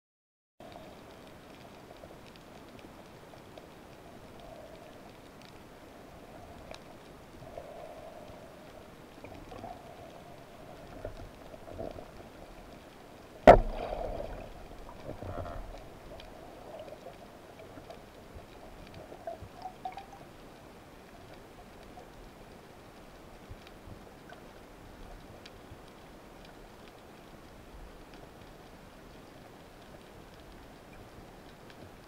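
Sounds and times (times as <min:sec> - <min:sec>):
faint ticks: 0:00.6 - 0:32.0
underwater ambience: 0:00.6 - 0:32.0.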